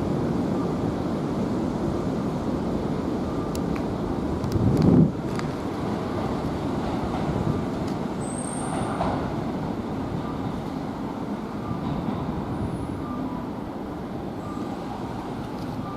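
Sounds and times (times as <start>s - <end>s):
electric train rumbling: 0.0s - 15.9s
high train squeal: 3.1s - 4.0s, 5.6s - 15.9s.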